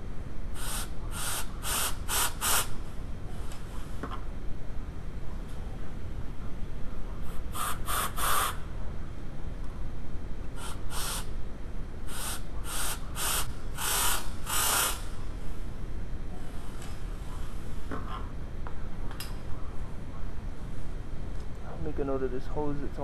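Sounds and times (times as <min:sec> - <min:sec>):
air blowing through hose: 0:12.1 - 0:15.2.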